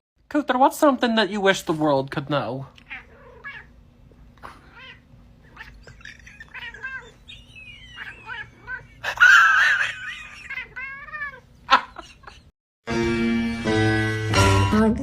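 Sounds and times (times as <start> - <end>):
cat meowing: 2.8 - 3.8, 4.7 - 9.0, 9.7 - 11.5
cat yowling: 2.9 - 3.8, 4.6 - 11.6.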